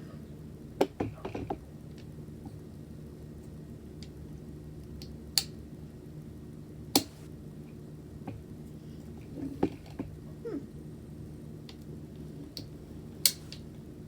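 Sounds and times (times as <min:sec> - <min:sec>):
tripod snapping clicks: 0:07.0 - 0:07.2.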